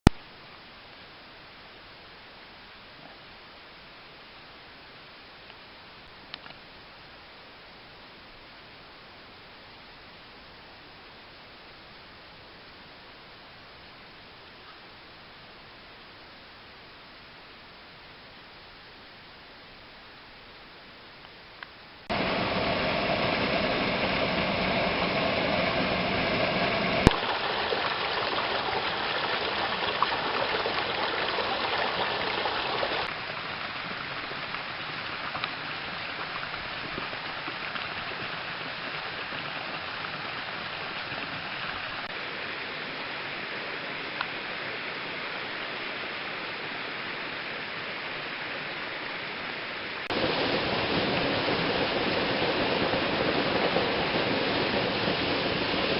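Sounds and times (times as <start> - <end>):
stream rushing over rocks: 22.0 - 55.9.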